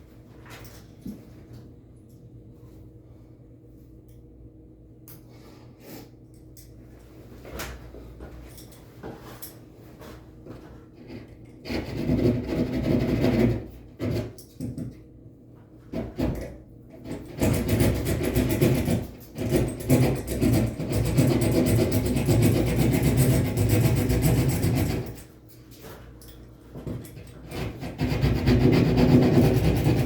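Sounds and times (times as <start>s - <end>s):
low steady hum: 0.0s - 17.6s.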